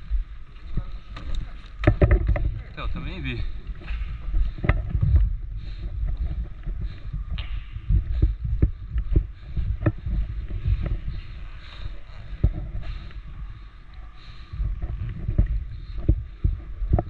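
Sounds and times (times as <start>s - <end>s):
low rumble: 0.0s - 17.0s
dull thumps and sharp knocks: 1.8s - 2.5s.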